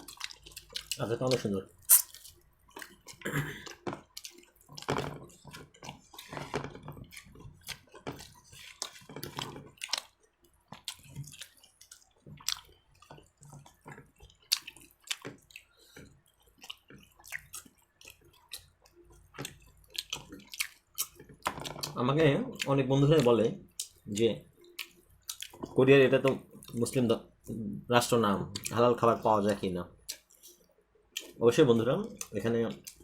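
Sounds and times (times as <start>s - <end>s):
wet chewing and lip smacking: 0.0s - 22.0s, 22.6s - 26.8s, 29.5s - 31.4s, 32.1s - 33.0s
small mouth clicks: 1.8s - 4.4s.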